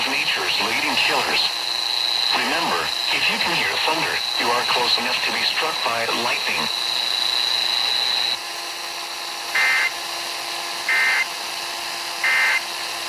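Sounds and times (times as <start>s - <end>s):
faint hum: 0.0s - 8.4s
steady high whine: 0.0s - 13.0s.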